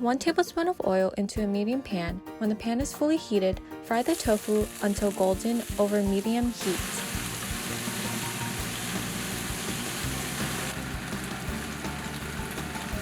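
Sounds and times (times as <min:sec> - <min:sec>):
background music: 0:00.0 - 0:13.0
tofu sizzling in oil: 0:04.0 - 0:13.0.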